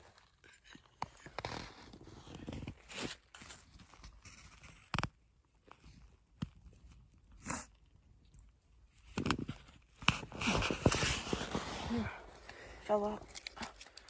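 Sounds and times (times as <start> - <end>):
crunches on packed snow: 10.2 - 13.2.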